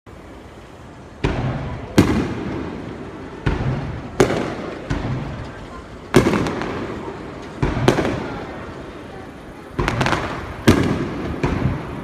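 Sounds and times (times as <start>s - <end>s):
fireworks bursting with rumbling echo: 0.2s - 12.0s.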